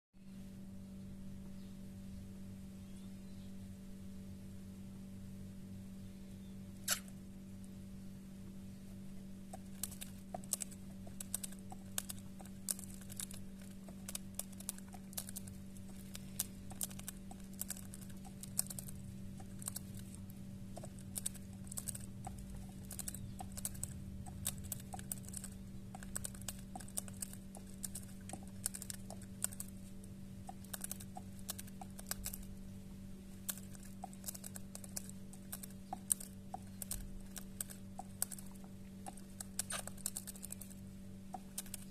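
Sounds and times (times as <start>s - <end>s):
bird beak clicks and crunches: 9.5s - 32.6s, 33.4s - 41.9s.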